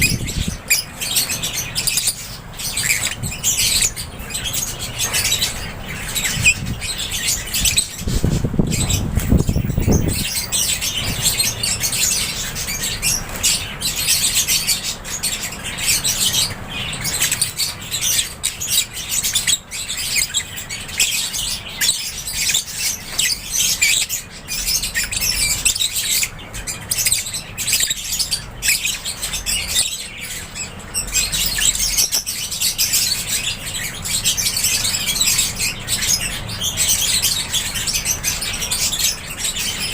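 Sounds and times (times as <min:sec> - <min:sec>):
birds chirping and chattering: 0:00.0 - 0:39.9.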